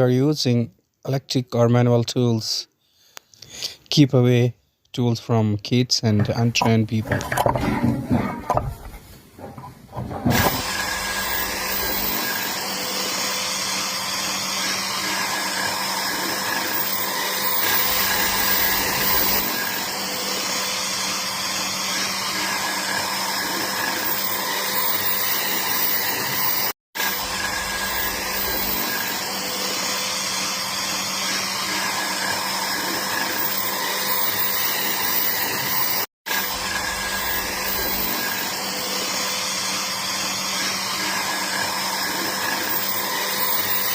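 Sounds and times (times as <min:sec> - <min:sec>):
power tool motor whine: 0:10.1 - 0:43.9.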